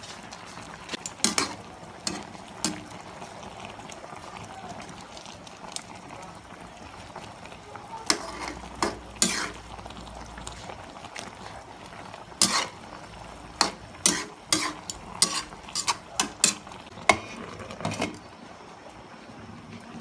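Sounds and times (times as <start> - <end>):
metal utensil scraping a pot: 0.9 - 3.0, 8.0 - 9.8, 12.4 - 18.3.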